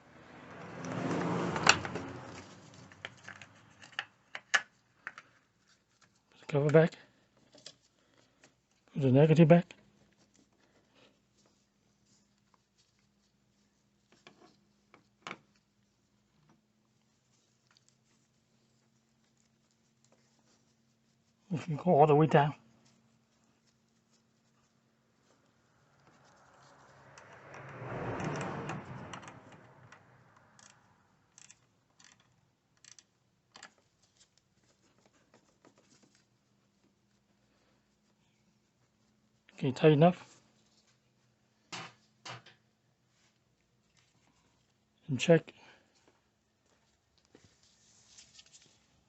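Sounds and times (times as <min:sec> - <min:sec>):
ratchet clicks: 0:30.6 - 0:33.7.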